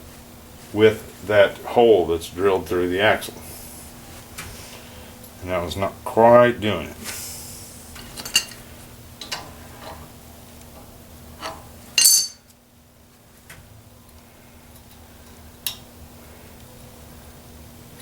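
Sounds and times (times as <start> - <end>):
sharp metal clinks: 12.0 - 12.4.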